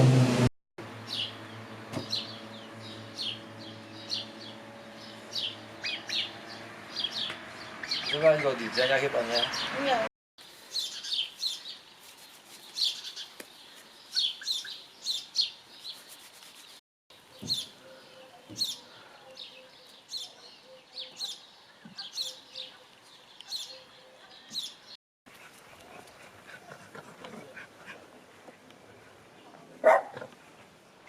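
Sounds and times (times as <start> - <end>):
birds chirping: 1.0 - 10.0, 10.7 - 12.0, 12.6 - 25.0.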